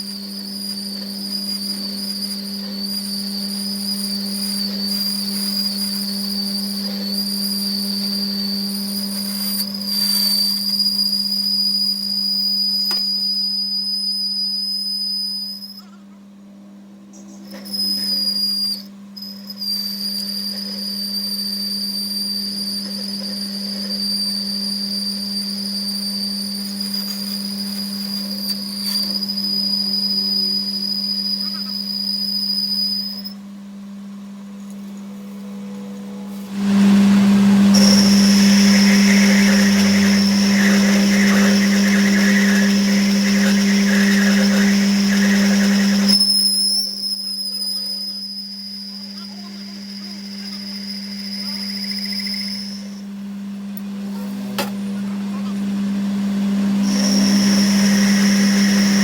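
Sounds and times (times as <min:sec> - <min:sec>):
high-pitched metallic squeal: 0:00.0 - 0:15.9, 0:36.6 - 0:53.1, 0:56.8 - 0:59.0
low machine hum: 0:00.0 - 0:59.0.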